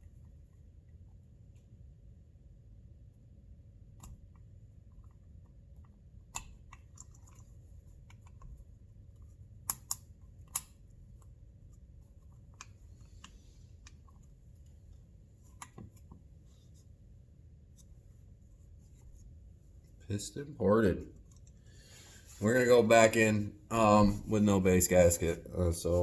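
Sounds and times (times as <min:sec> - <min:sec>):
faint low hum: 0:00.0 - 0:26.0
small parts and tools clicking: 0:04.0 - 0:14.3.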